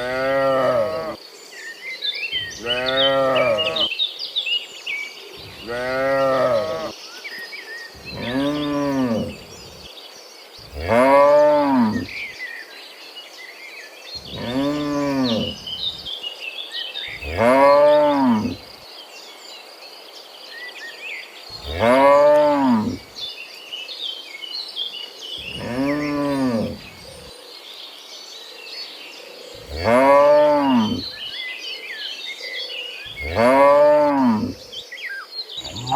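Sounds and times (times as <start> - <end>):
cattle mooing: 0.0 - 1.2, 2.4 - 3.9, 5.4 - 6.9, 8.0 - 9.8, 10.7 - 12.2, 14.2 - 16.1, 17.2 - 18.6, 21.6 - 23.0, 25.4 - 26.9, 29.6 - 31.2, 33.1 - 34.6, 35.6 - 35.9.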